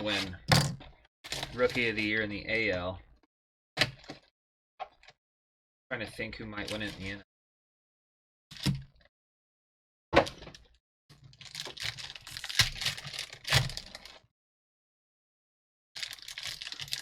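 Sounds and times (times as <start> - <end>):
cards rustling and crinkling: 16.0 - 17.0.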